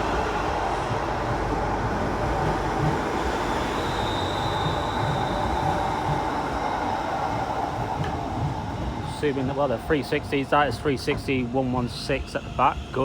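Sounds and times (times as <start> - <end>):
electric train rumble: 0.0 - 13.0.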